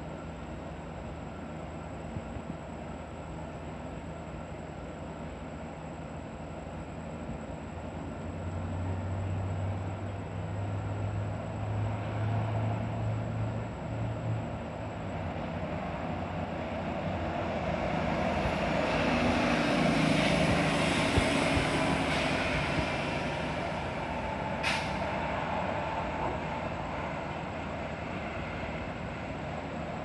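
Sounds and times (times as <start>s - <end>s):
short sharp hiss: 24.6s - 25.2s.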